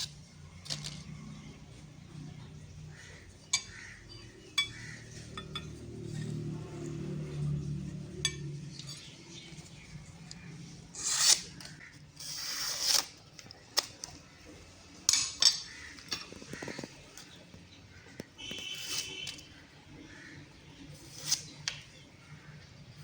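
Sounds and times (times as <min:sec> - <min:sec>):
knife blade scraping: 0:08.3 - 0:13.2, 0:18.5 - 0:19.5, 0:20.9 - 0:22.0.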